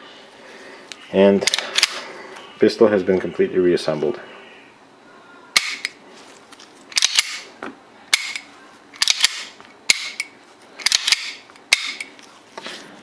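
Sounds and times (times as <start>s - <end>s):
pistol action clacking: 5.6s - 6.0s, 6.9s - 7.5s, 8.1s - 12.1s.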